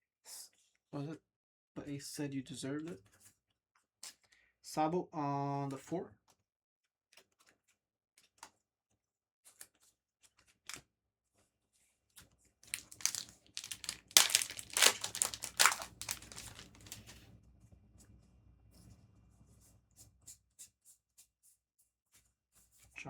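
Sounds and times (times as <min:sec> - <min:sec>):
foil wrapper crinkling: 0:12.7 - 0:17.2.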